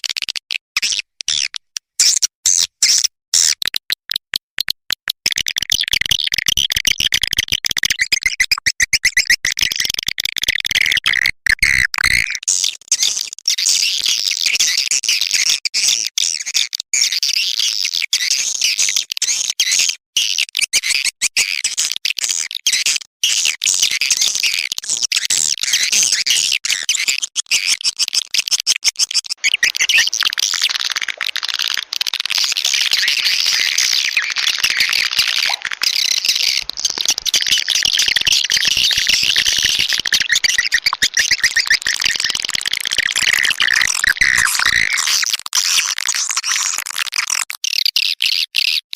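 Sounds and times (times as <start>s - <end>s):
swiftlet chirping chatter: 29.4s - 45.2s.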